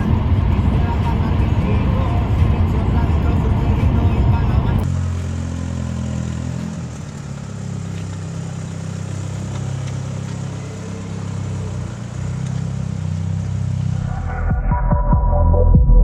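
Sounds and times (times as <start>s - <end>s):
car engine running: 0.0s - 16.0s.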